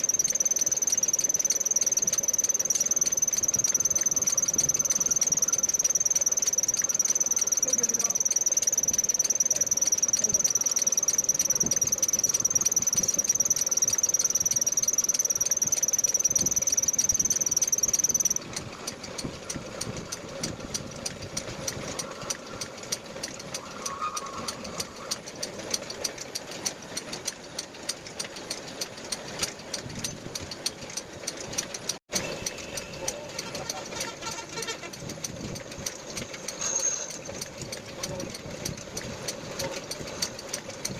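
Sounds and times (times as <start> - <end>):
high-pitched lathe squeal: 0.0 - 18.4, 35.8 - 37.4
low hum: 0.0 - 18.8
lathe ticking: 0.0 - 40.9.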